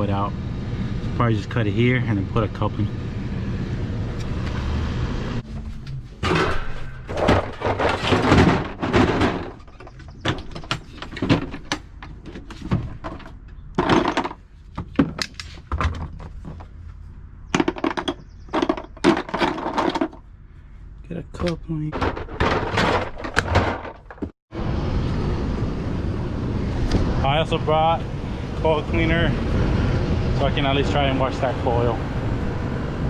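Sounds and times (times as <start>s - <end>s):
handling knocks and scrapes: 5.4s - 20.3s, 21.4s - 24.4s.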